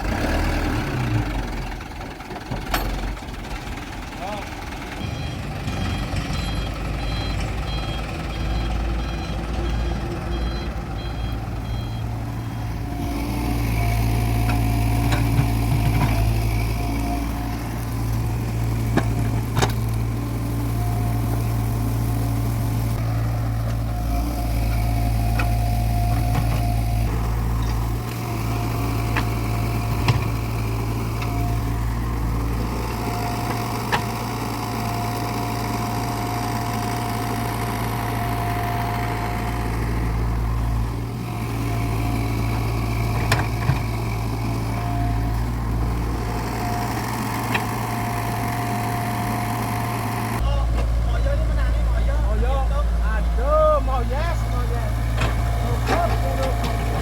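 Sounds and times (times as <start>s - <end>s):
truck diesel engine running: 0.0s - 57.0s
reversing alarm beeping: 5.0s - 15.1s, 23.9s - 29.5s, 34.6s - 39.6s, 44.4s - 45.9s, 48.0s - 50.2s.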